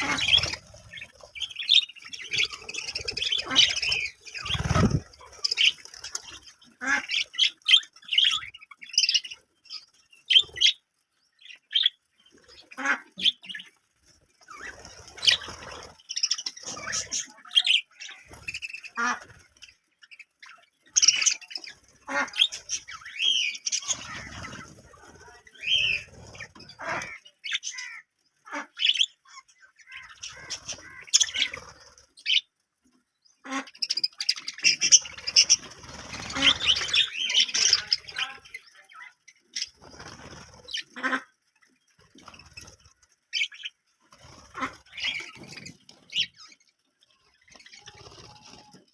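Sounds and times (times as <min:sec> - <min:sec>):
budgerigars chirping: 0:00.0 - 0:10.8, 0:14.5 - 0:32.5, 0:33.4 - 0:41.3.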